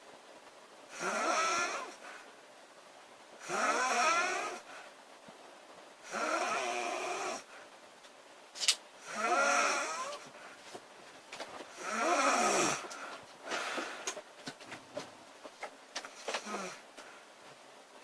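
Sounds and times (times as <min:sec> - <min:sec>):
woman snoring loudly: 0:00.9 - 0:02.0, 0:03.4 - 0:04.7, 0:06.0 - 0:07.5, 0:09.0 - 0:10.2, 0:11.8 - 0:13.0, 0:16.4 - 0:16.8
faint breathing: 0:04.5 - 0:05.0, 0:09.9 - 0:10.8, 0:11.7 - 0:14.3.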